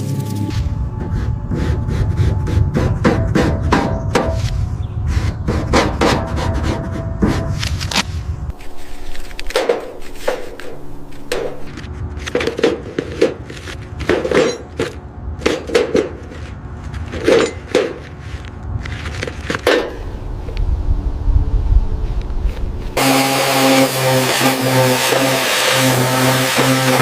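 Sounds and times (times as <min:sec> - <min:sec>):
knocks of hard objects: 0:09.5 - 0:16.4.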